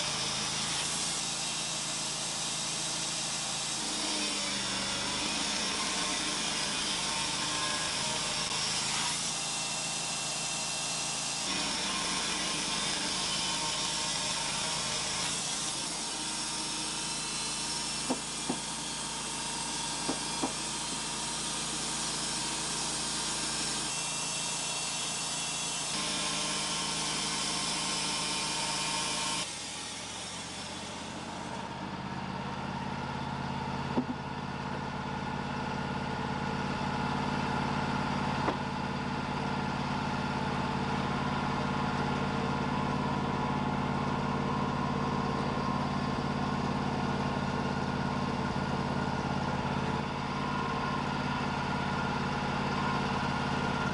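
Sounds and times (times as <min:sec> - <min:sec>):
sawmill engine running: 0:00.0 - 0:53.9
band saw blade hissing: 0:06.4 - 0:31.6.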